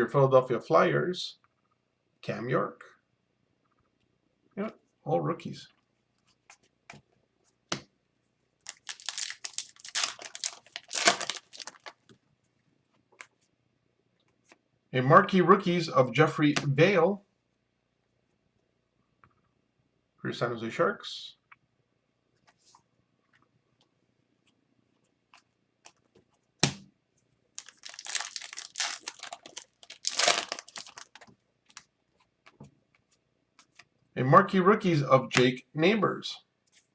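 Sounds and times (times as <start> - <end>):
foil wrapper crinkling and tearing: 8.6 - 12.0, 27.6 - 31.8.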